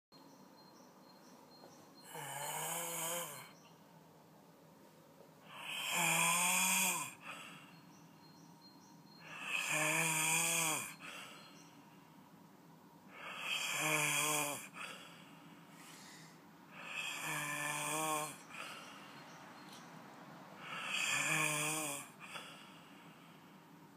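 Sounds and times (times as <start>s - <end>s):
person snoring with buzzing tone: 2.0s - 3.6s, 5.4s - 7.7s, 9.2s - 11.4s, 13.1s - 19.1s, 20.6s - 22.8s.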